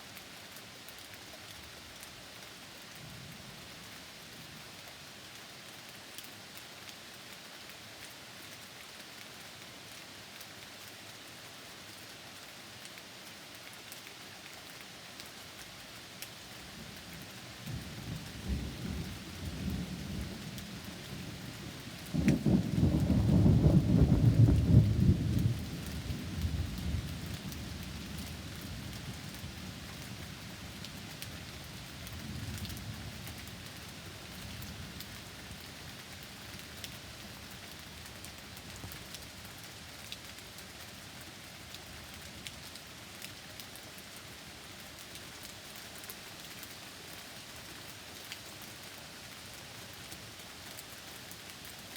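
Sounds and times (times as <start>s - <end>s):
steady rain: 0.0s - 51.9s
thunder rumbling: 22.2s - 25.6s.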